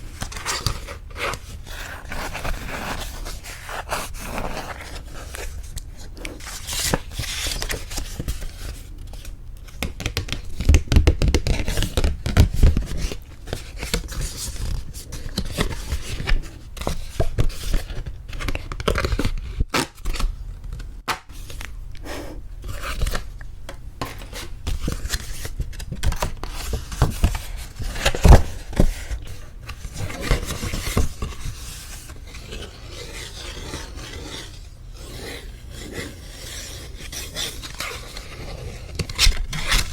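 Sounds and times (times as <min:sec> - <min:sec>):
paper and card crinkling: 0:24.0 - 0:35.0.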